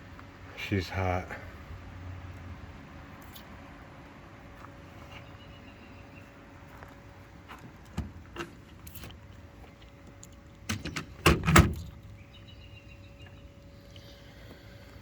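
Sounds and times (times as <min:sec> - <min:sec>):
faint steady hum: 0:03.1 - 0:15.0.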